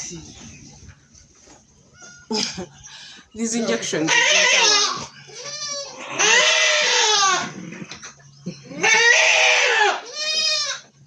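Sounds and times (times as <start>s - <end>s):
goats bleating: 3.7s - 7.9s, 8.5s - 11.0s.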